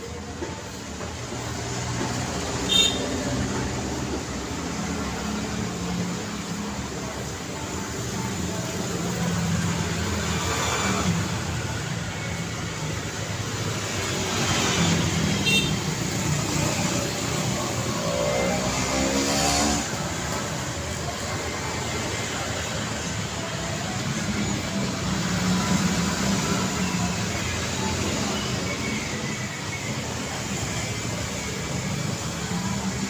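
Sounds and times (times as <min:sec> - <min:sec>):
street traffic: 0:00.0 - 0:33.0.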